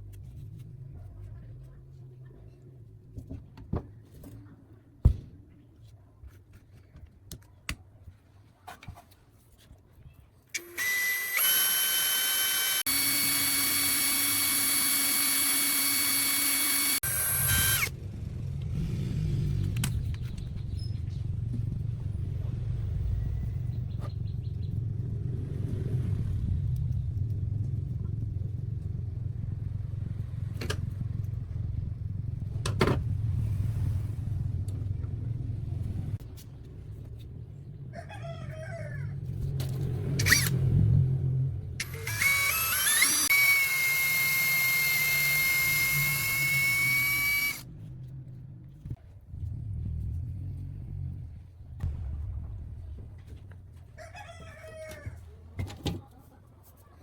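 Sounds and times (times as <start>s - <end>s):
power tool motor whining: 10.6s - 17.9s, 40.2s - 40.5s, 41.8s - 47.6s
low rumble: 47.5s - 54.0s.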